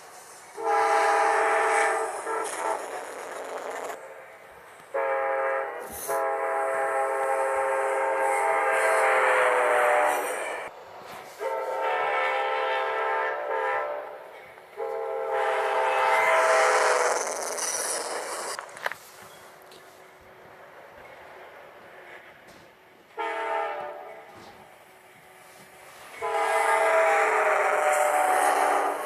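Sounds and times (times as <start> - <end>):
locomotive horn blasts: 0.6 - 2.9, 4.9 - 10.6, 11.4 - 14.2, 14.8 - 16.8, 23.2 - 24.6, 26.2 - 29.0.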